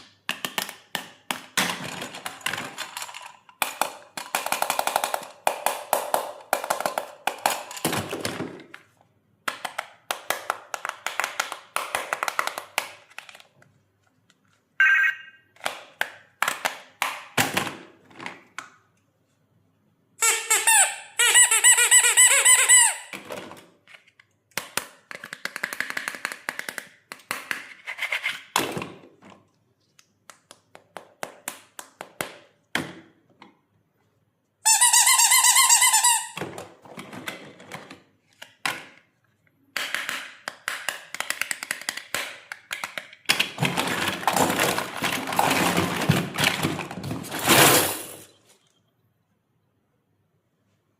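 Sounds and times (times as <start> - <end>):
plastic toy pieces clattering: 0.3 - 8.7, 39.8 - 48.8
electronic warbling tones: 14.8 - 15.4.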